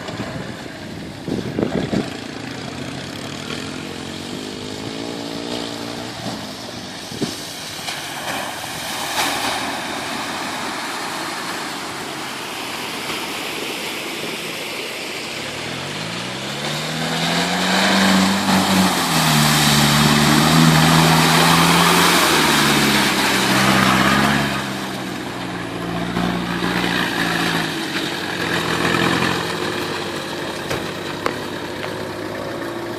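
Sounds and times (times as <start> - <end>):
car engine revving: 1.9 - 7.5, 15.4 - 32.9.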